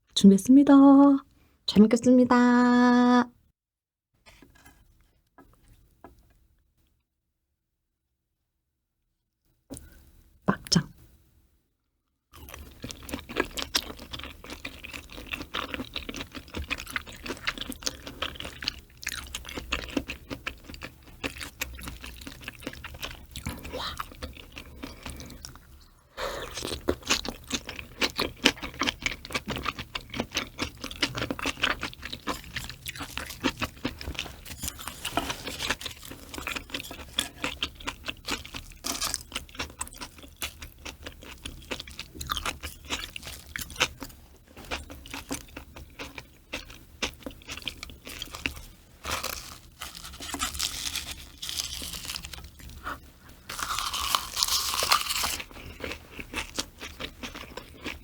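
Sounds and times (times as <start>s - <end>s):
crunching and chewing food: 12.3s - 58.0s.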